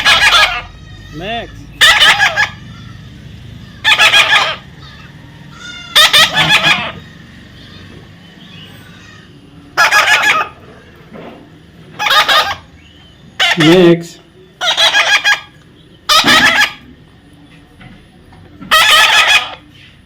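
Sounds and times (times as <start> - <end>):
parrot harsh calls: 0.0 - 11.0, 11.9 - 17.0, 18.7 - 19.8.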